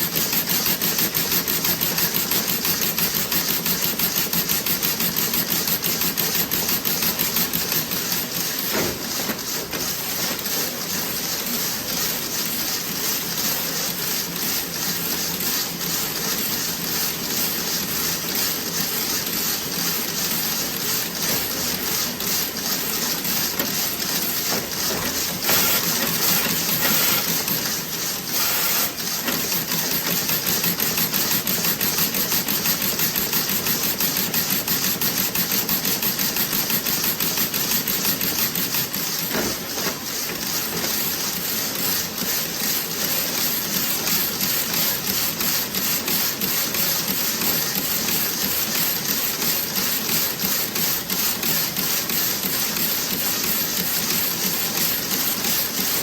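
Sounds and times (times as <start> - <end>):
knitting machine clattering: 17.1 - 41.4.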